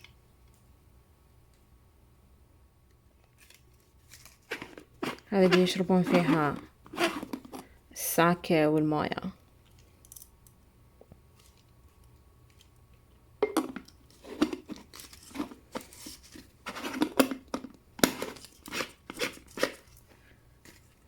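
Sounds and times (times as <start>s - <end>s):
packaging crinkling and tearing: 3.2s - 6.2s, 14.1s - 17.5s.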